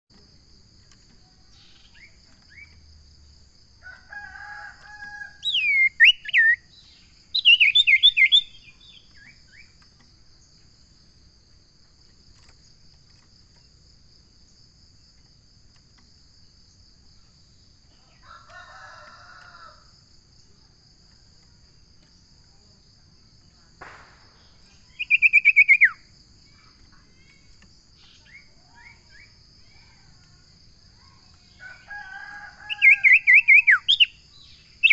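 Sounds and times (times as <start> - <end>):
high insect drone: 0.1 - 34.9
bird whistles and trills: 5.5 - 6.7, 7.4 - 9.7, 24.8 - 26.0, 32.7 - 34.1.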